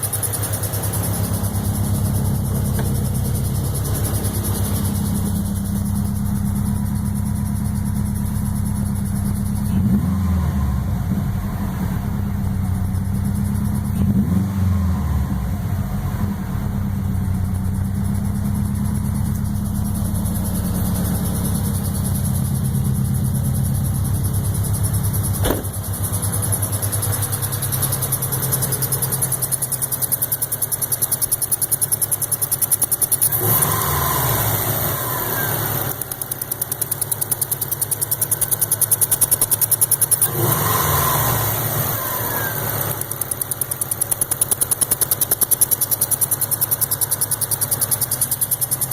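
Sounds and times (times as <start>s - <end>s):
car engine idling and revving: 0.0s - 48.9s
sharp click: 25.3s - 30.3s, 35.8s - 40.5s, 42.4s - 48.9s.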